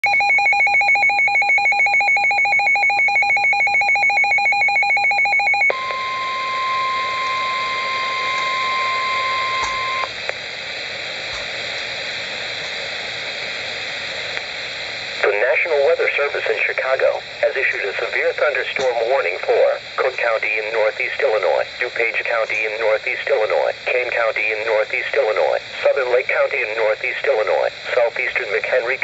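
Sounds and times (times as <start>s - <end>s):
rapid electronic alert beeps: 0.0s - 5.9s
weather radio alarm tone: 0.0s - 10.1s, 15.2s - 29.0s
radio hiss: 5.7s - 29.0s.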